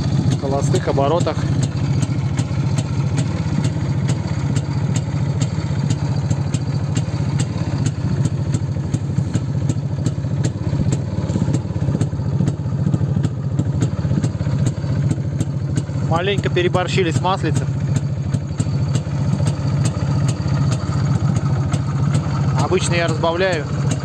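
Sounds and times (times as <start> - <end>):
motorcycle engine idling: 0.0 - 24.0.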